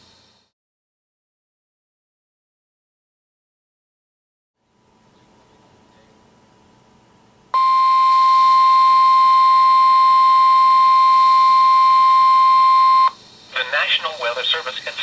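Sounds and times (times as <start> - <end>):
long steady warning beep: 7.6 - 15.0.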